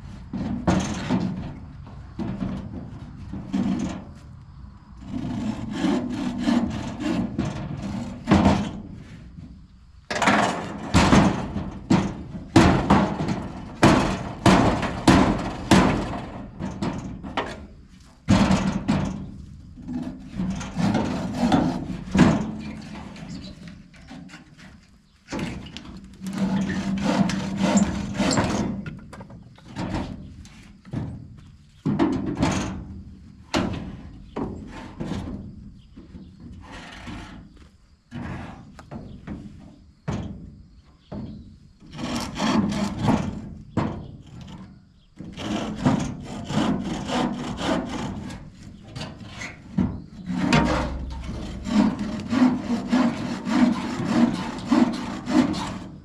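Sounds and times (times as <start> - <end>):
saw cutting through wood: 5.1 - 8.2, 20.0 - 22.2, 26.3 - 28.6, 41.9 - 43.4, 45.2 - 49.6, 50.2 - 56.0.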